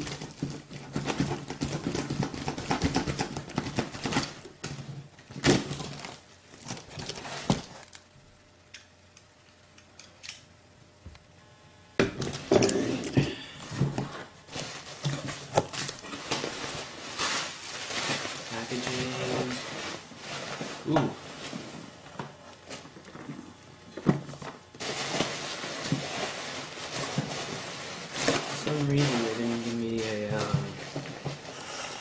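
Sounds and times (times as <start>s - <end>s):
packing material rustling and tearing: 5.4s - 8.1s, 13.7s - 23.1s, 24.2s - 31.8s.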